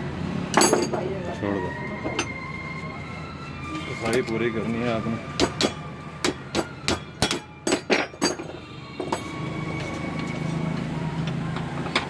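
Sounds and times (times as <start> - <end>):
sharp metallic knocks: 5.4 - 9.2.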